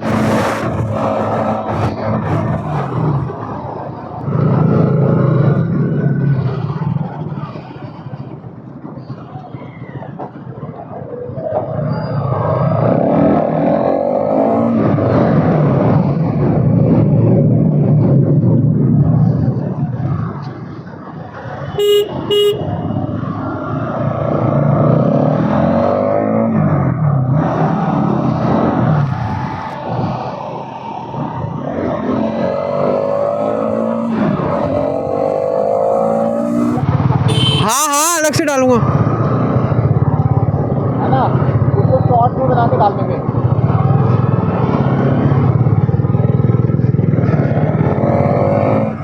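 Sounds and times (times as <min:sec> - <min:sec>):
motorcycle engine accelerating: 0:00.0 - 0:07.9, 0:12.2 - 0:49.0
vehicle horn toots: 0:21.8 - 0:23.0, 0:36.5 - 0:37.8
motorcycle engine running: 0:36.4 - 0:48.8.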